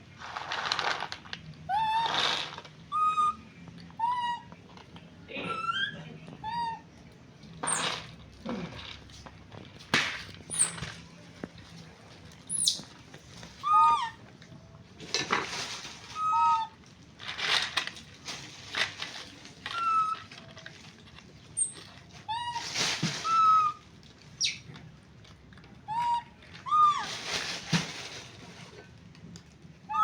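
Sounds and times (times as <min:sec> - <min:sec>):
baby monkey squeaky calls: 0:01.7 - 0:03.4, 0:04.0 - 0:04.5, 0:05.5 - 0:06.8, 0:07.7 - 0:08.0, 0:10.5 - 0:10.8, 0:12.5 - 0:12.9, 0:13.6 - 0:14.2, 0:16.2 - 0:16.7, 0:19.7 - 0:20.2, 0:21.6 - 0:22.6, 0:23.2 - 0:23.8, 0:24.4 - 0:24.7, 0:25.9 - 0:27.1.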